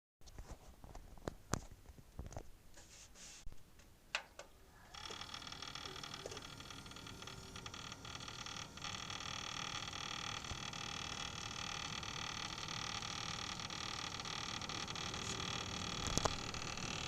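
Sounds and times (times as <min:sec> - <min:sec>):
liquid cooler whining and ticking: 0:04.1 - 0:17.0.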